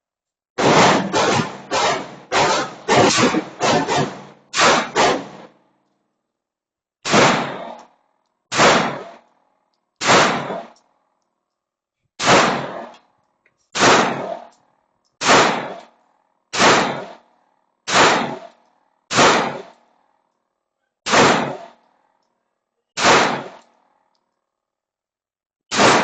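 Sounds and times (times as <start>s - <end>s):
shots clanging off steel targets: 0.6s - 5.6s, 7.0s - 7.9s, 8.5s - 9.3s, 10.0s - 10.8s, 12.2s - 12.9s, 13.8s - 14.5s, 15.2s - 17.2s, 17.9s - 19.8s, 21.0s - 21.8s, 23.0s - 23.8s, 25.7s - 26.0s.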